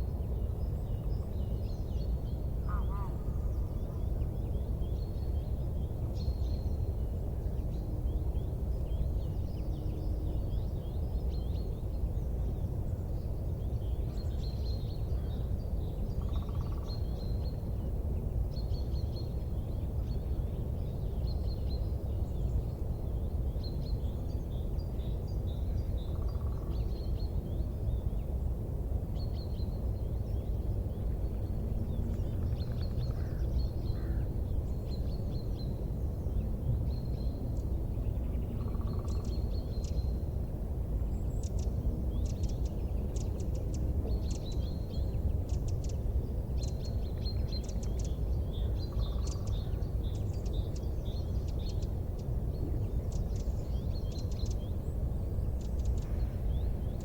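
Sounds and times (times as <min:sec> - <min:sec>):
small birds chirping: 0:41.1 - 0:57.0
low rumbling noise: 0:52.0 - 0:57.0.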